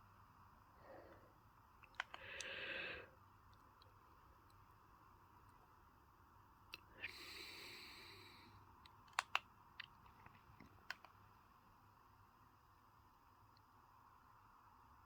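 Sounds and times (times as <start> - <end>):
faint steady hum: 0.0 - 15.0
small sharp clicks: 1.8 - 2.6, 8.8 - 11.2.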